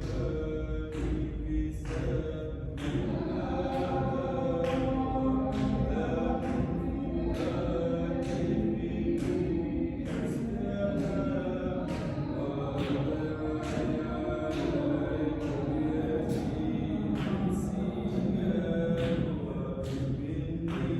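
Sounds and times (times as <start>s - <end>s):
group chanting in unison: 0.0s - 20.9s.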